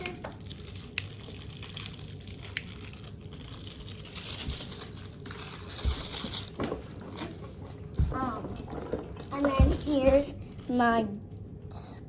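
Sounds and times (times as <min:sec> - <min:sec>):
plastic toys rustling: 0:00.0 - 0:11.2.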